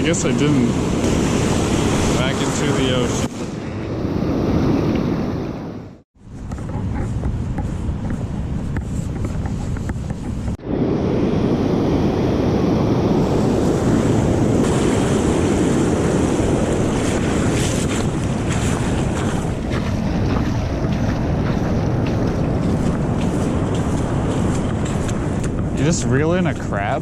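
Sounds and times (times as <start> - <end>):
ocean surf breaking: 0.0 - 6.0, 10.6 - 27.0
wind buffeting microphone: 0.0 - 27.0.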